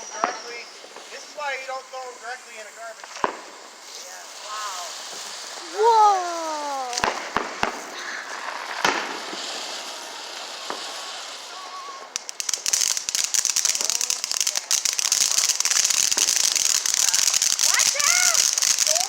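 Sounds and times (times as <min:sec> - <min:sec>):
firework bang: 0:00.0 - 0:14.0
firework hiss: 0:00.0 - 0:19.0
rapid firework crackling: 0:00.0 - 0:19.0.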